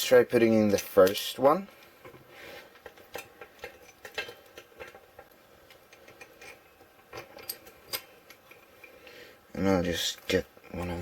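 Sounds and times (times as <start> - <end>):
faint metal clicks and taps: 1.8 - 9.1.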